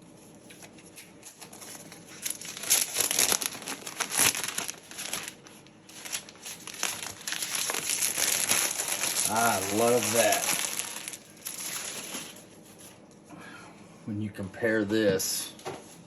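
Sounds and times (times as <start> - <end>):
packaging wrap crinkling: 0.4 - 13.0.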